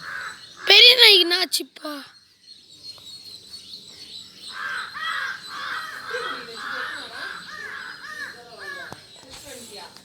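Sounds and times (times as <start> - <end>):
crows cawing: 0.0 - 1.0, 4.5 - 9.1.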